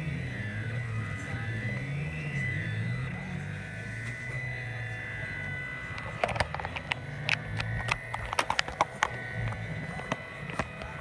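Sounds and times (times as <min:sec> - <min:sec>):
stepper motors humming and whining: 0:00.0 - 0:11.0
sharp irregular clicks: 0:06.0 - 0:11.0.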